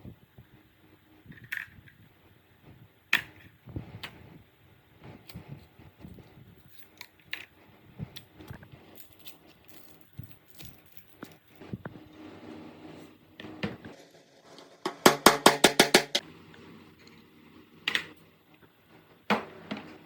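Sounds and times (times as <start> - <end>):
metal parts and tools clinking: 8.9 - 11.6.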